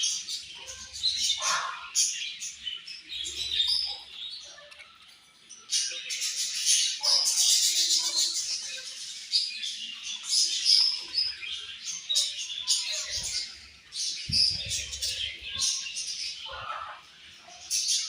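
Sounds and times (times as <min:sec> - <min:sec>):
budgerigars chirping: 0:00.0 - 0:04.7.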